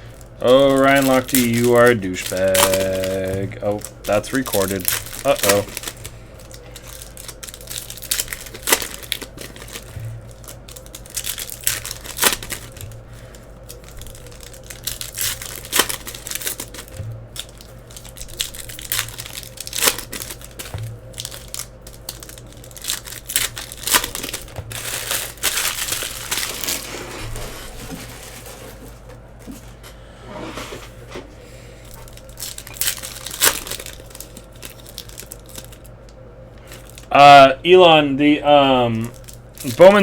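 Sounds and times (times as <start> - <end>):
card pack wrappers crinkling: 0.0 - 29.5, 31.8 - 37.4, 38.6 - 40.0
steady low hum: 0.0 - 40.0
cards being handled: 0.3 - 29.8.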